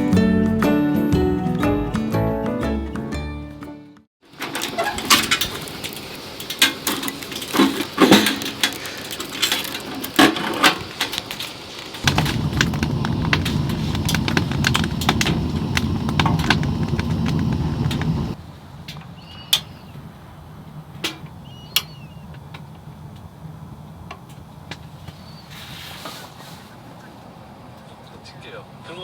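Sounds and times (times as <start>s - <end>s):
wood fire crackling: 4.3s - 19.1s.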